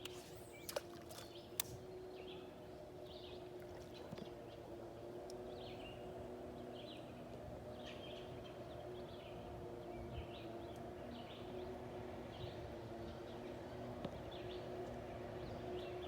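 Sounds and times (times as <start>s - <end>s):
small birds chirping: 0.0s - 2.4s
distant motorboat engine drone: 0.0s - 16.0s
sharp clicks: 1.6s - 1.8s.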